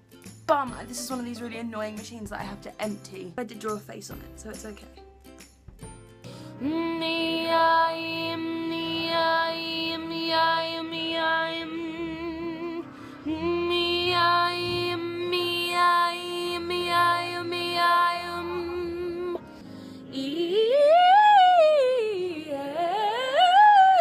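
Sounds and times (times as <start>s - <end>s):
woman singing without words: 6.5s - 24.0s.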